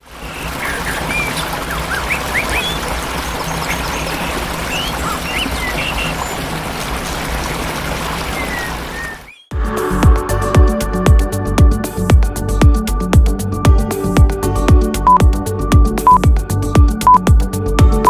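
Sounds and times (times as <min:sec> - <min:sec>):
falling water rushing: 0:00.0 - 0:09.4
birds chirping: 0:00.0 - 0:09.5.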